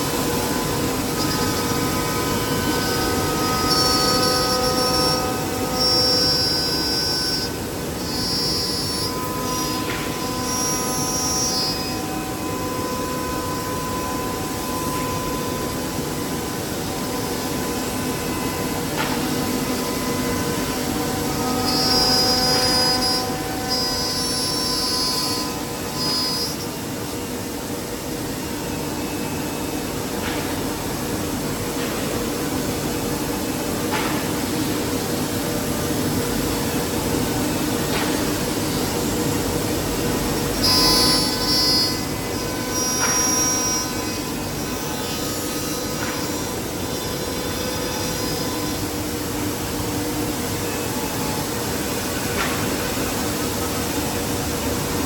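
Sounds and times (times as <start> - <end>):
high-pitched machine whine: 0.0 - 55.0.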